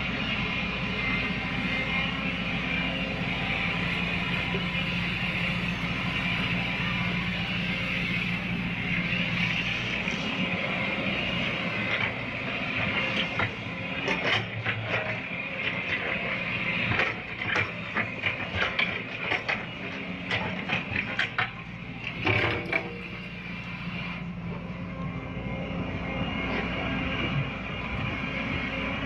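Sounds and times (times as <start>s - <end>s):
excavator diesel engine running: 0.0s - 29.0s
machine clanks and knocks: 16.9s - 23.3s.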